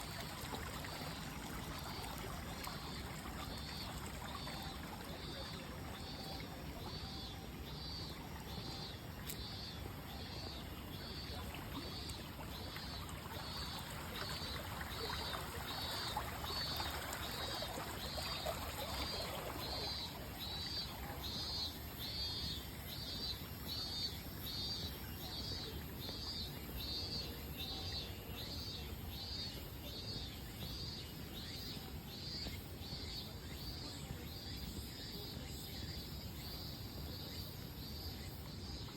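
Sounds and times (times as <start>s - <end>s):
water flowing: 0.0s - 6.9s, 8.2s - 21.9s.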